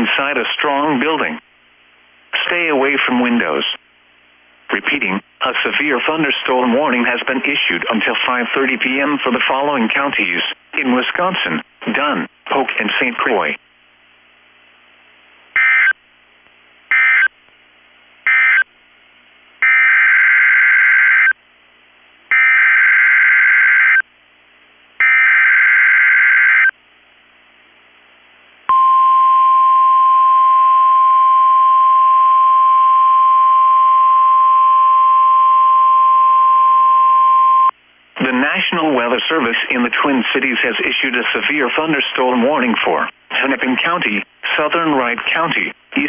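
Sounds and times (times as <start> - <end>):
steady warning alarm tone: 15.6 - 16.0, 16.9 - 17.3, 18.3 - 18.7, 19.6 - 21.4, 22.3 - 24.0, 25.0 - 26.7.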